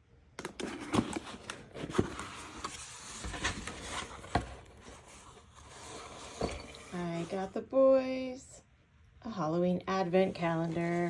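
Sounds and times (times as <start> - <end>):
rustling handling noise: 0.4 - 7.5, 10.1 - 11.0.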